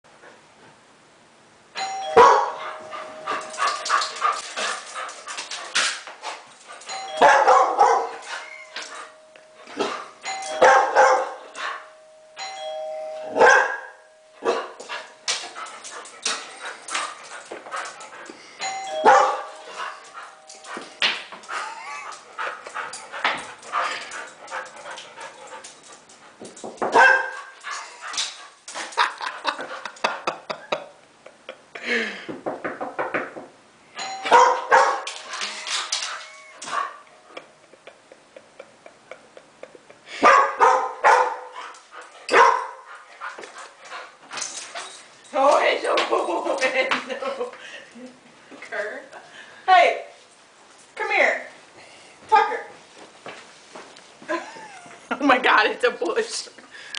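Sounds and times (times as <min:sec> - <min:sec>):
ding-dong doorbell chime: 0:01.8 - 0:04.3, 0:06.8 - 0:15.8, 0:18.6 - 0:21.0, 0:34.0 - 0:37.5
dog barking: 0:02.2 - 0:02.6, 0:07.2 - 0:08.2, 0:10.6 - 0:11.4, 0:13.4 - 0:14.8, 0:19.1 - 0:19.5, 0:27.0 - 0:27.4, 0:34.3 - 0:35.1, 0:40.2 - 0:41.6, 0:42.3 - 0:42.8.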